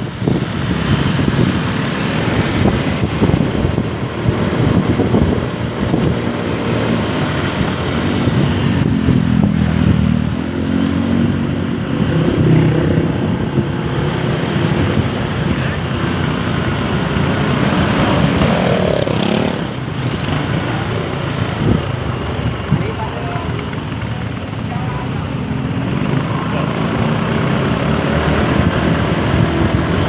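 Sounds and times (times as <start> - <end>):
vehicle engines in traffic: 0.0 - 30.0.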